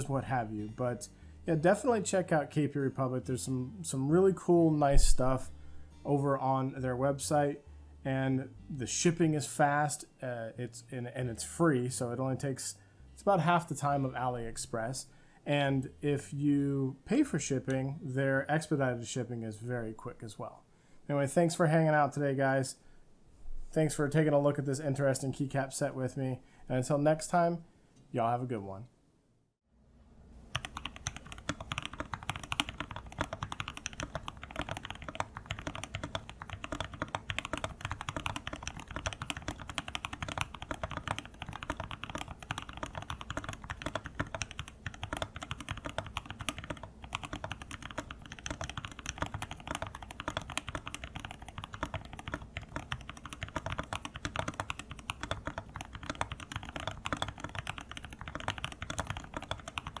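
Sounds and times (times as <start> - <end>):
fast typing on mechanical keyboard: 30.6 - 60.0.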